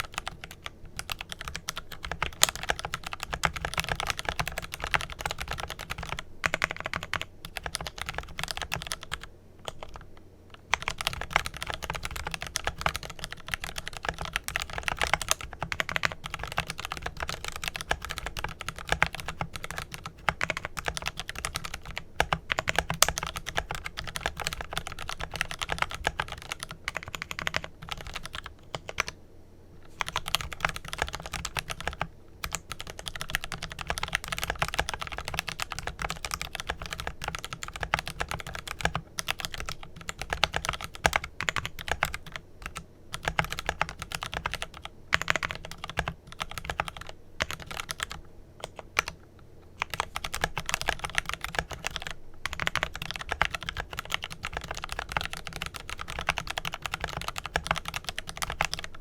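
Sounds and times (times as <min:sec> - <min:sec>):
mechanical keyboard typing: 0:00.0 - 0:29.2, 0:30.0 - 0:49.2, 0:49.8 - 0:59.0.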